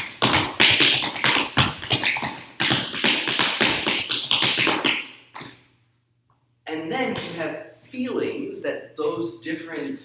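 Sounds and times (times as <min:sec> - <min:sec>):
tap shoes striking floor: 0:00.0 - 0:05.5.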